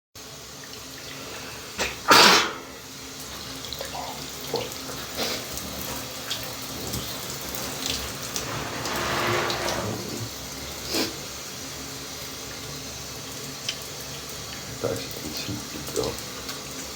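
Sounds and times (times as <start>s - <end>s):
shower running: 0.2s - 16.9s
man sneezing: 1.8s - 2.7s.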